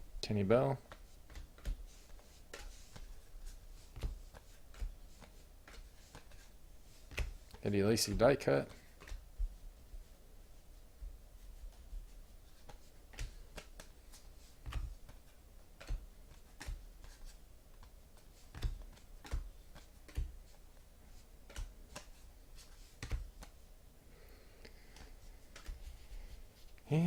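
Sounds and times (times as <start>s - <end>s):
cards clicking and tapping on table: 0.9s - 3.2s, 3.8s - 6.5s, 7.1s - 9.2s, 12.6s - 15.2s, 15.8s - 20.6s, 21.4s - 23.6s, 24.9s - 25.9s.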